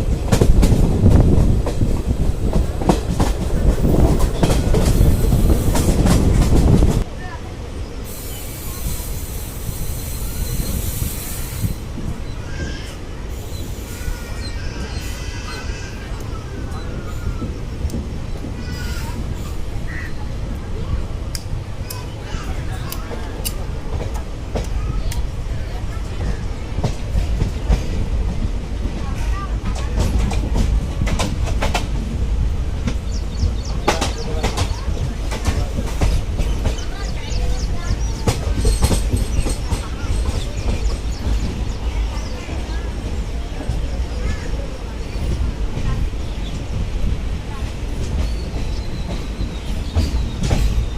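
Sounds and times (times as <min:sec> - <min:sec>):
train wheels rumbling: 0:00.0 - 0:50.9
high hiss: 0:08.0 - 0:12.0.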